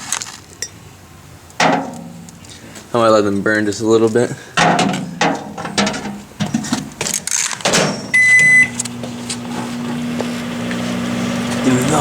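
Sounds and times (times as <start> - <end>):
knocks and clatter: 1.6 - 2.4, 4.6 - 8.2
microwave humming: 5.4 - 12.0
microwave beep: 7.9 - 9.3.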